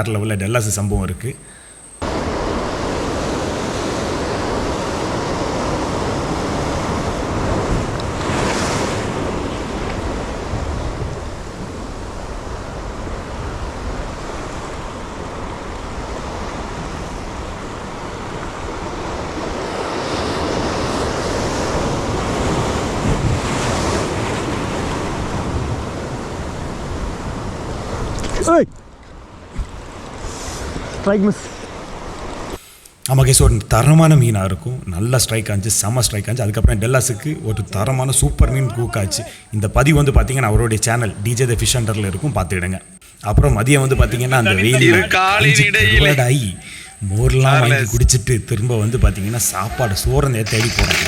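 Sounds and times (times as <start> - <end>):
sea waves breaking: 1.4 - 28.4, 29.1 - 34.7, 35.3 - 51.0
wind buffeting microphone: 2.1 - 28.2.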